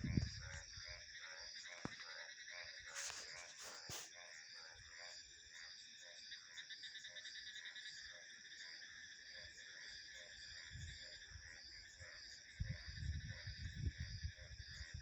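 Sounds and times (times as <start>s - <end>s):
wind rumble: 0.0s - 0.6s, 12.6s - 15.0s
crickets trilling: 0.0s - 15.0s
frogs croaking: 0.0s - 15.0s.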